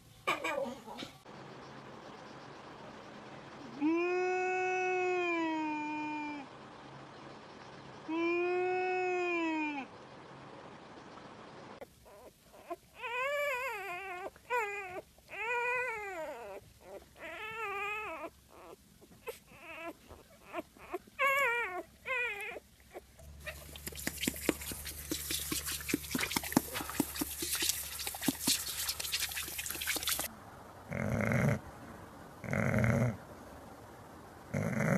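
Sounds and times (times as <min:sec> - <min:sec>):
low steady hum: 0:00.0 - 0:34.9
animal whining cries: 0:12.1 - 0:27.2.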